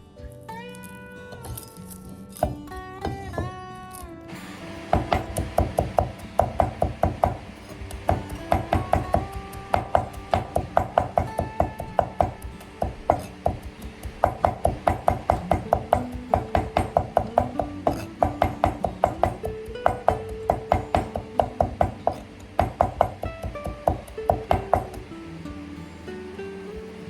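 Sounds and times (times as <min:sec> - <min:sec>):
background music: 0:00.0 - 0:27.0
rapid steady knocks: 0:04.7 - 0:25.2.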